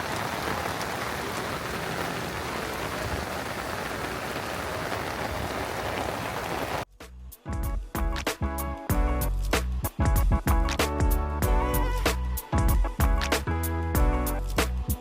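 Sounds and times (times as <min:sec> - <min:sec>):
torrential rain hissing: 0:00.0 - 0:06.9
music: 0:06.9 - 0:15.0.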